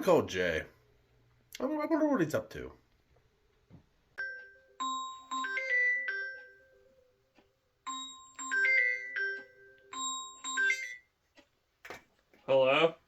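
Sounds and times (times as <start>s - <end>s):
mobile phone ringtone: 4.2s - 7.2s, 7.8s - 11.1s.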